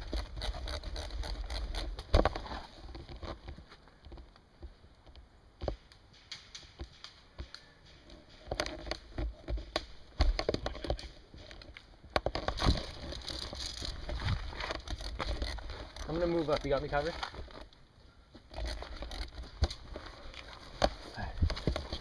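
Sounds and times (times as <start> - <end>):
rustling: 6.2 - 22.0.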